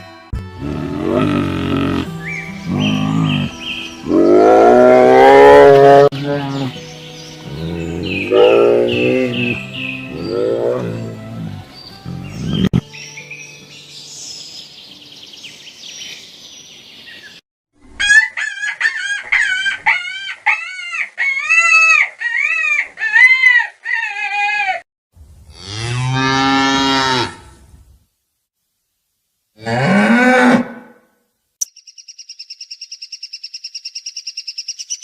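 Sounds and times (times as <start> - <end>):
cow mooing: 0.6 - 6.8, 7.5 - 12.7, 25.5 - 27.5.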